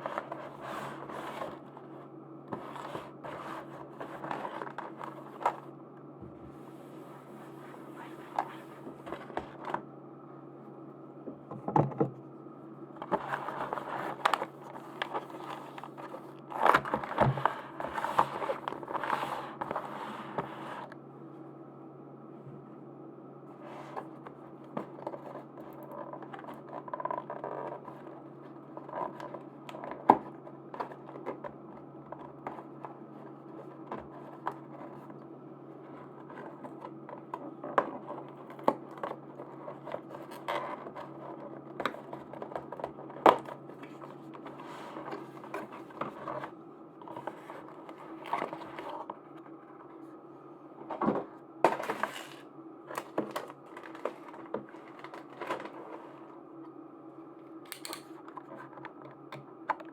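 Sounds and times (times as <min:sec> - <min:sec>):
low background hum: 0:00.0 - 0:59.9
plastic packaging crinkling and scraping: 0:51.7 - 0:56.4.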